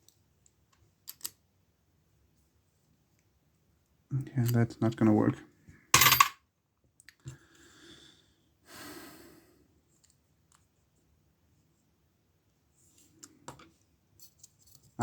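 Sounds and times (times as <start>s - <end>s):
faint clicks of small parts: 0.0s - 1.4s, 6.9s - 7.5s, 9.9s - 10.7s.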